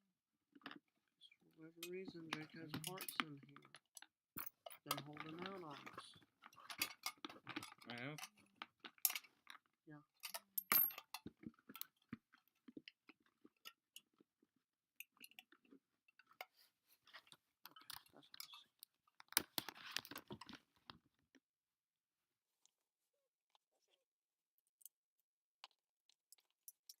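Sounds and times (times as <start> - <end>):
rummaging through small parts: 1.8 - 12.5, 16.2 - 21.1.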